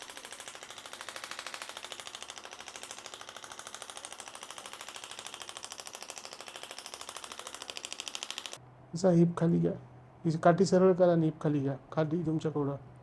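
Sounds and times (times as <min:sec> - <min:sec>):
electric percussion device tapping: 0:00.0 - 0:08.6.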